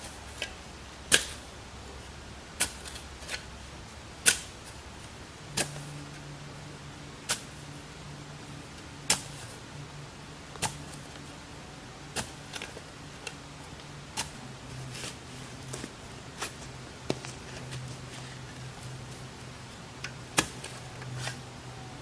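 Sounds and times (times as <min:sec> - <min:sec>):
steady low hum: 0:00.0 - 0:22.0
spade chopping into soil: 0:01.1 - 0:01.4, 0:04.2 - 0:04.5, 0:10.6 - 0:10.8, 0:12.2 - 0:12.7, 0:20.4 - 0:20.8.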